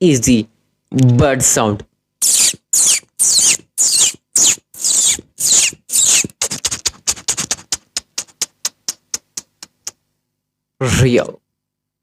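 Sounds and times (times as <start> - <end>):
beatboxer imitating bird chirps: 2.2 - 10.0.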